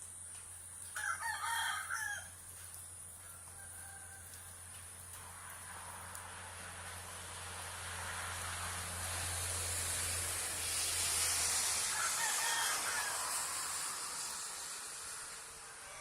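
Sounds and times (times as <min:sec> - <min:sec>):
rushing noise: 0:05.6 - 0:16.0.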